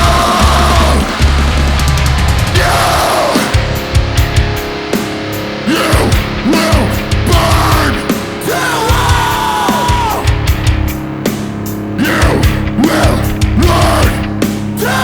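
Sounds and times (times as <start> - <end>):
heavy rock band playing: 0.0 - 15.0
person yelling vocals: 2.6 - 3.6, 5.7 - 10.4, 12.0 - 15.0.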